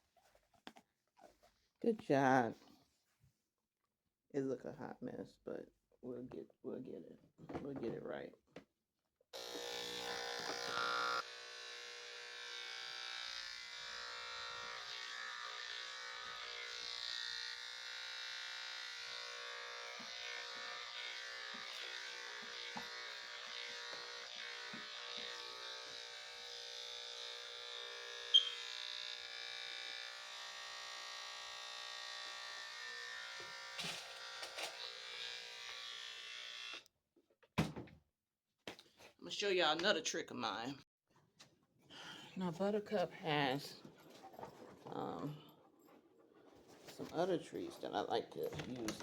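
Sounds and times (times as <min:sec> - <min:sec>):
electric clippers running: 0:09.4 - 0:36.8.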